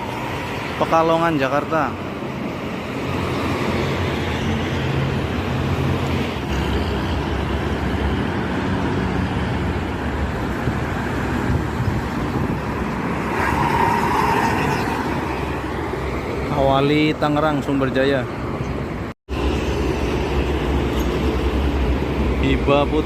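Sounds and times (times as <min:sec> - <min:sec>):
highway traffic passing at speed: 0:00.0 - 0:23.0.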